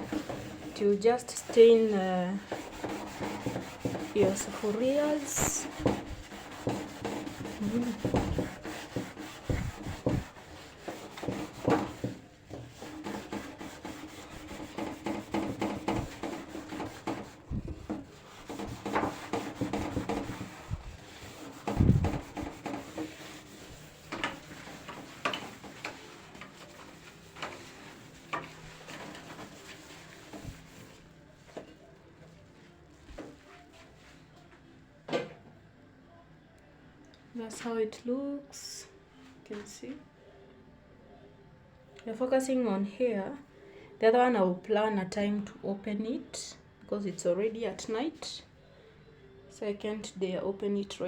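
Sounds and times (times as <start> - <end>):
hand scrubbing a surface: 0.0 - 31.6.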